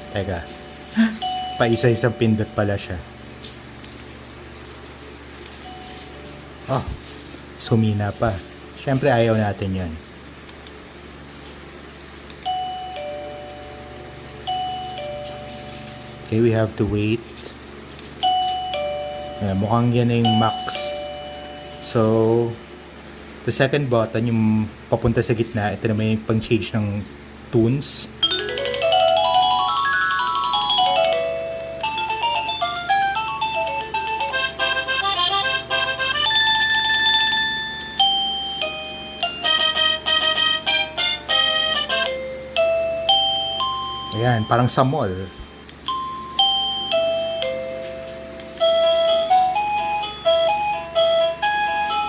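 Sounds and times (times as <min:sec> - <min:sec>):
doorbell ding-dong chime: 0:00.0 - 0:02.7, 0:12.4 - 0:16.3, 0:18.2 - 0:22.4, 0:28.2 - 0:34.9, 0:36.1 - 0:40.5, 0:41.6 - 0:52.0.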